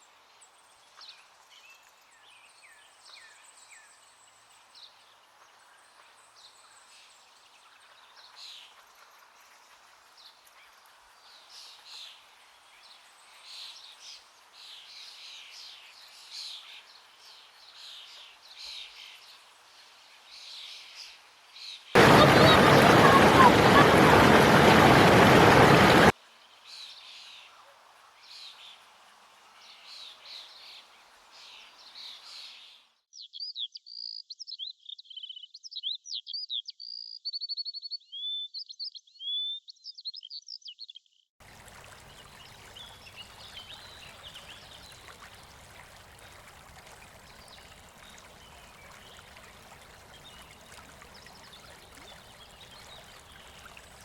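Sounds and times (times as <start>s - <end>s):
faint stream hiss: 0.0s - 32.8s, 41.4s - 54.0s
loud rushing noise: 22.0s - 26.1s
songbirds chirping and singing: 33.2s - 41.1s.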